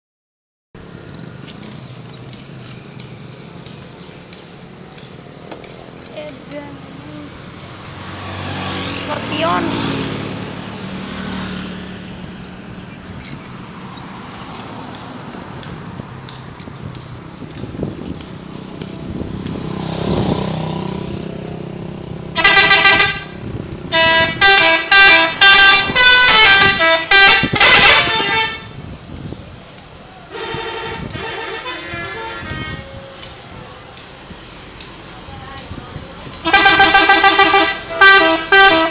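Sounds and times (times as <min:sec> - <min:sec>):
vehicle passing: 0:00.8 - 0:29.4
road and engine noise: 0:00.8 - 0:38.9
musical air horn toots: 0:22.4 - 0:28.8, 0:30.3 - 0:33.1, 0:36.4 - 0:38.9.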